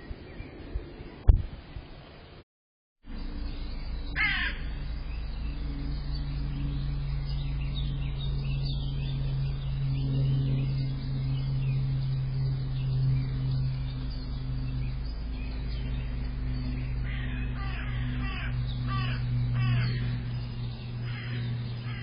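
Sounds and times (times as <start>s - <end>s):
steady low hum: 3.0s - 22.0s
crow cawing: 4.2s - 4.7s, 17.0s - 20.2s, 21.0s - 22.0s.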